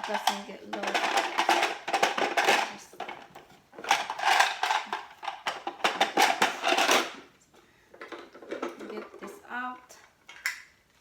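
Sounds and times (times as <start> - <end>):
metal attachments clicking and clattering: 0.0 - 7.2.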